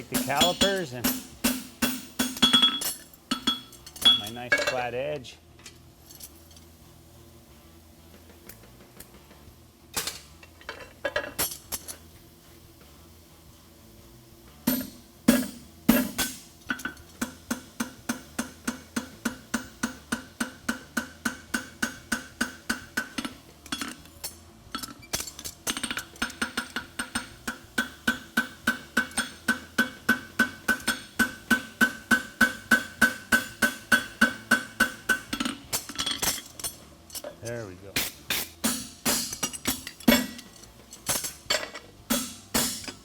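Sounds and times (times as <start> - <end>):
hammer striking horseshoe on anvil: 0.0 - 4.9, 14.7 - 37.3, 38.0 - 43.0.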